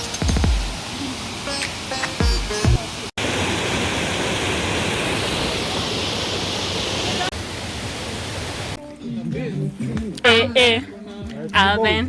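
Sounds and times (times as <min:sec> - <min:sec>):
waterfall roaring: 0:00.0 - 0:08.8.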